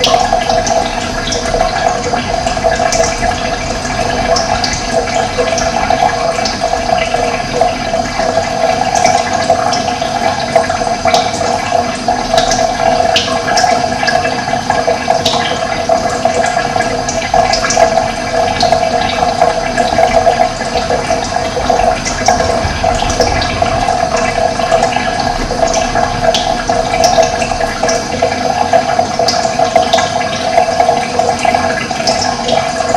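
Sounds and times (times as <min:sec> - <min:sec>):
running water rushing: 0:00.0 - 0:32.9.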